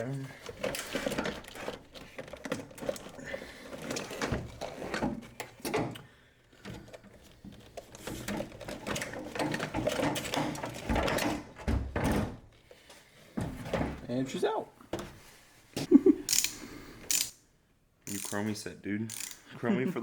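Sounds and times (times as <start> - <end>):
ratchet wrench clicking: 16.3 - 17.4, 18.0 - 18.5, 19.1 - 19.5.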